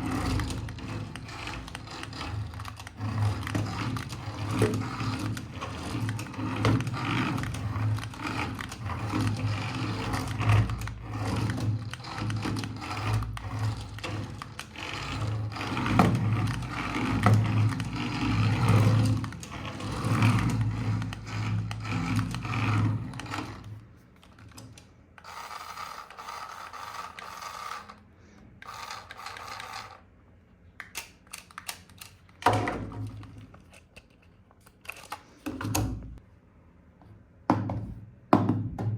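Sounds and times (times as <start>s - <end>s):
toy vehicle motor whirring: 0.0s - 30.1s.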